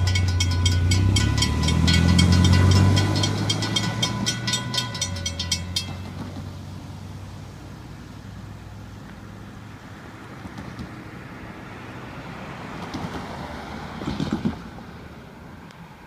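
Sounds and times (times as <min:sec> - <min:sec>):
thin steady squeal: 0:00.0 - 0:06.2
train wheel clicks on rails: 0:00.0 - 0:06.6
train rumble: 0:00.0 - 0:07.0.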